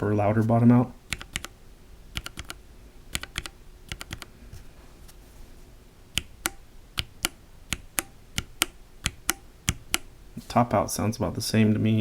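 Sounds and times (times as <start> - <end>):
keyboard switches clicking: 1.1 - 1.5, 2.2 - 4.3, 6.2 - 10.1.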